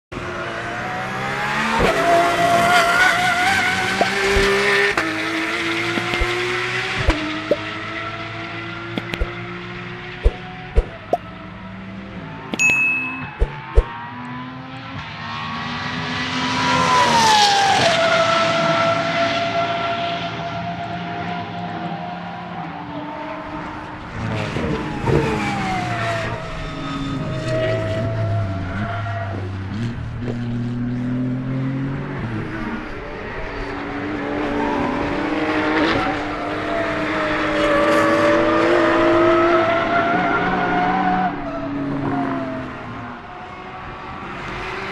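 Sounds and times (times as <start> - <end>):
racing car engine: 0.1 - 44.9.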